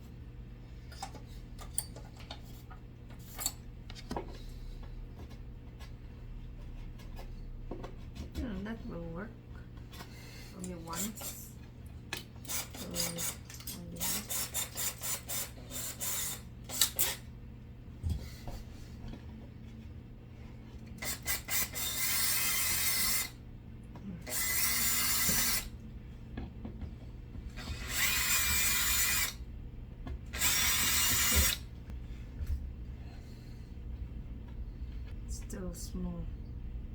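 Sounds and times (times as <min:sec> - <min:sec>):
power drill motor whine: 0:21.0 - 0:23.4, 0:24.2 - 0:25.7, 0:27.5 - 0:29.4, 0:30.3 - 0:31.6.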